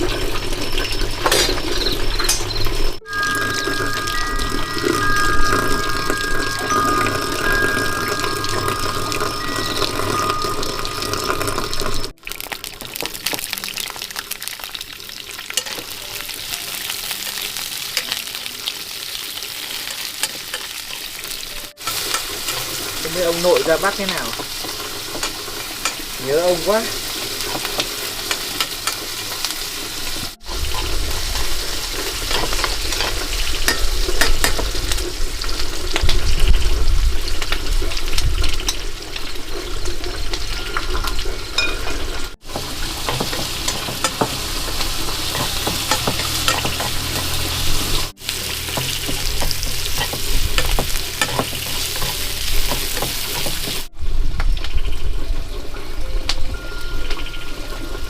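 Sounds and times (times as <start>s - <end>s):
food sizzling in a pan: 0.0s - 56.0s
stirring scrapes and clicks: 45.0s - 47.5s, 48.5s - 53.9s.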